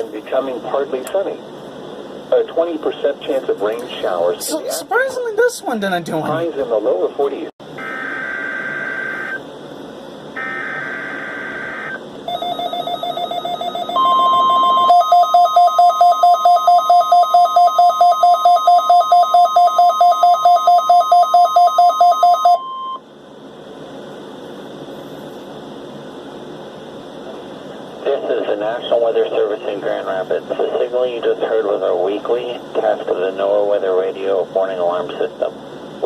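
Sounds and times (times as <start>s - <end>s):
faint radio hiss: 0.0s - 7.6s, 23.1s - 36.0s
steady warning alarm tone: 7.7s - 9.5s, 10.3s - 23.0s
alarm beeping rapidly: 7.8s - 9.4s, 10.4s - 23.0s
warbling digital header tones: 10.4s - 22.7s.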